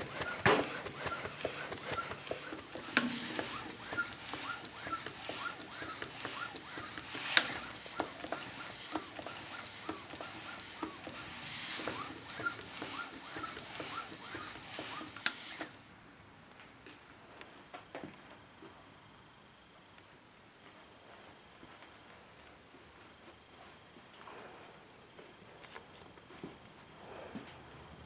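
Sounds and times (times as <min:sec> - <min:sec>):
engine bearings knocking: 0:00.0 - 0:15.3
steam engine running: 0:00.0 - 0:15.8
steam hissing: 0:00.0 - 0:15.8.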